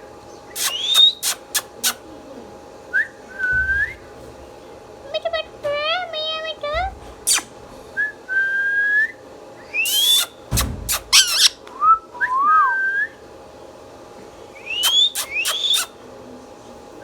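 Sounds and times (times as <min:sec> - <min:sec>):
parrot whistling: 0:00.5 - 0:02.0, 0:03.0 - 0:04.0, 0:07.3 - 0:13.2, 0:14.6 - 0:16.0
parrot squawks and clicks: 0:00.6 - 0:02.0, 0:07.3 - 0:07.5, 0:09.9 - 0:11.6, 0:14.8 - 0:15.9.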